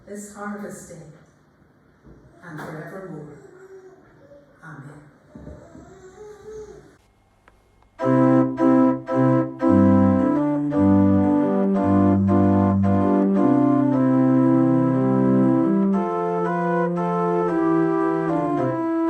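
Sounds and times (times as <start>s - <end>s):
organ playing chords: 8.0s - 19.0s.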